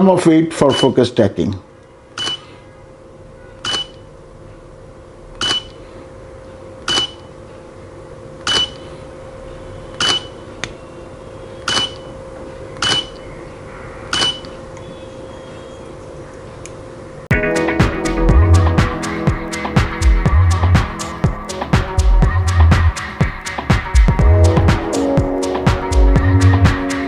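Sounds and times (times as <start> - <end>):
faint steady hum: 0.0 - 25.4.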